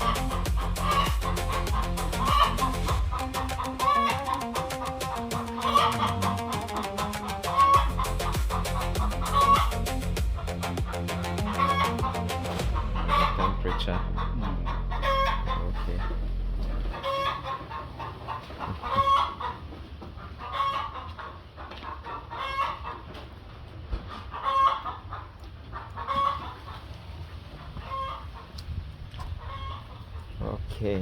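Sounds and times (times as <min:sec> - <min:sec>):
chickens clucking: 0:00.0 - 0:31.0
steady low hum: 0:07.8 - 0:17.0.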